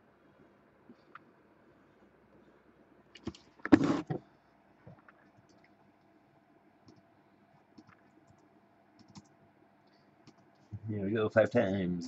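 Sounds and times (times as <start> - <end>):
keyboard and mouse clicks: 4.9 - 5.7, 6.9 - 7.1, 7.7 - 9.4, 10.2 - 10.8.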